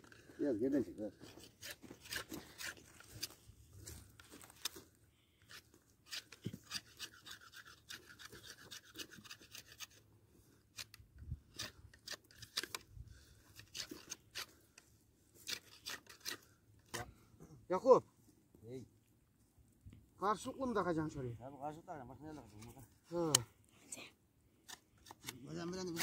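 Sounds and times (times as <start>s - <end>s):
knife scraping bark off branch: 1.1s - 3.4s, 5.4s - 10.0s, 10.7s - 12.8s, 13.5s - 14.8s, 15.4s - 17.1s, 24.6s - 26.0s.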